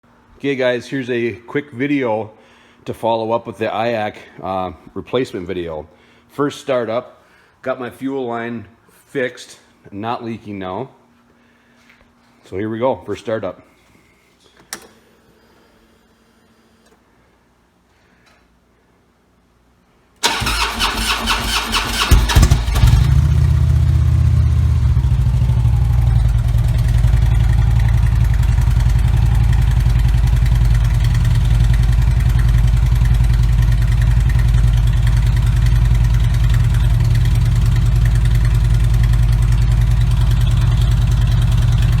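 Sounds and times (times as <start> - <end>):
motorcycle starter cranking: 20.2 - 24.2, 24.9 - 42.0
motorcycle engine idling: 21.8 - 42.0.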